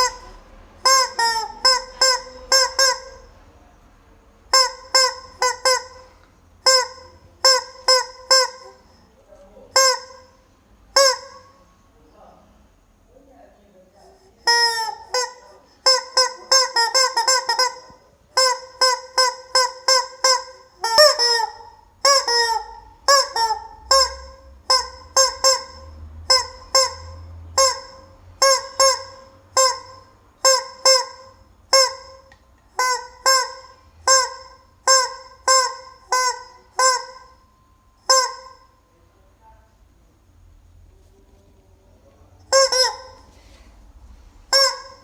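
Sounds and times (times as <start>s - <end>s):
rubber chicken toy squawking: 0.0s - 3.3s, 4.5s - 9.1s, 9.7s - 11.6s, 14.4s - 37.4s, 38.0s - 38.7s, 42.5s - 43.4s, 44.5s - 45.0s.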